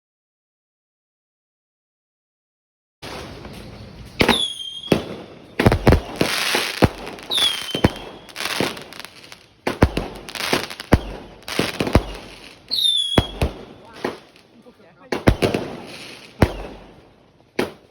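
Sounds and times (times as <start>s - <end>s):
falling firework whistles: 3.0s - 14.4s, 15.2s - 17.8s
firework hiss: 3.0s - 14.5s, 15.2s - 17.0s
firework bangs: 3.0s - 17.9s.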